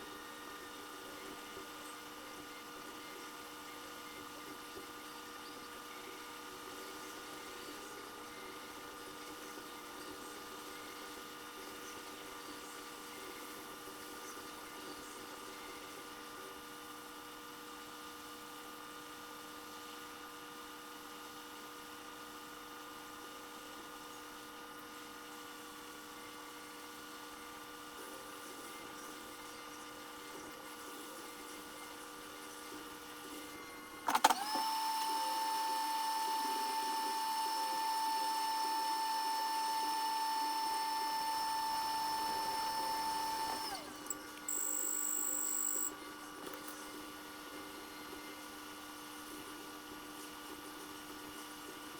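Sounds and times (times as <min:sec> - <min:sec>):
faint electrical hum: 0:27.4 - 0:51.9
small motor whining: 0:34.1 - 0:45.9.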